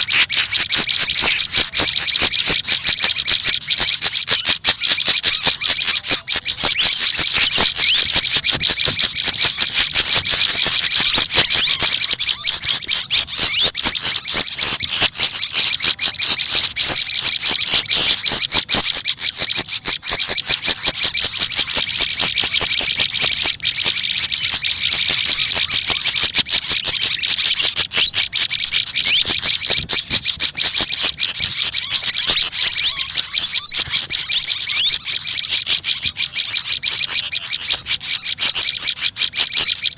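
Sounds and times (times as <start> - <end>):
small songbirds chirping: 0.0 - 39.9.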